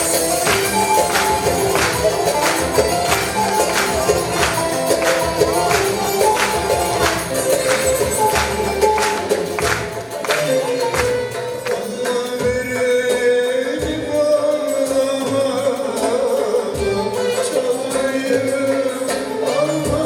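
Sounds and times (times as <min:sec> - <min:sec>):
folk ensemble wavering melody: 0:00.0 - 0:12.7
hand drum beat: 0:00.0 - 0:20.0.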